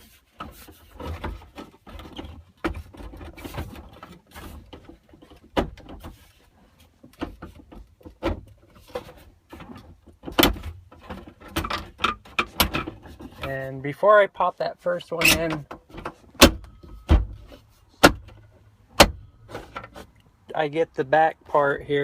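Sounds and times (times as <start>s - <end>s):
plastic knocking and rubbing: 0.0s - 13.5s.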